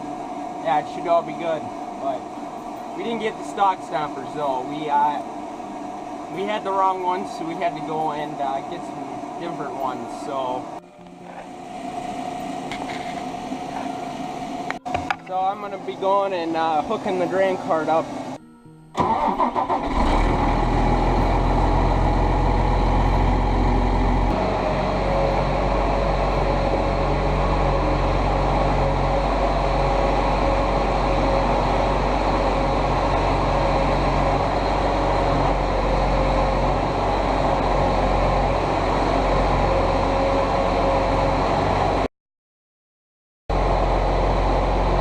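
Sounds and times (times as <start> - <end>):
steady whine: 0.0 - 42.1, 43.5 - 45.0
tractor engine running: 18.9 - 42.1, 43.5 - 45.0.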